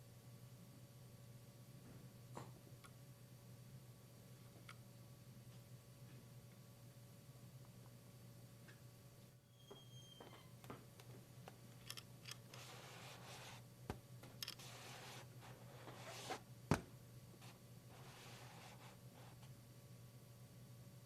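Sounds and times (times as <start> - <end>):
high squeak: 9.5 - 10.6
small clicks: 11.8 - 12.5.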